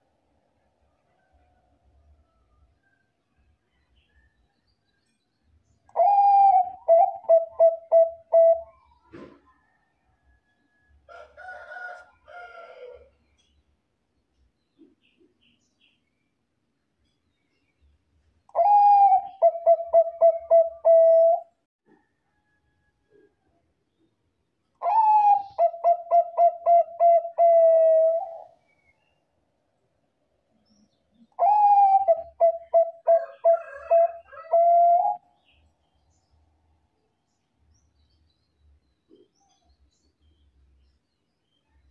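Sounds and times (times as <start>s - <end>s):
dove cooing: 5.9s - 9.4s, 18.5s - 21.5s, 24.8s - 28.6s, 31.3s - 35.2s.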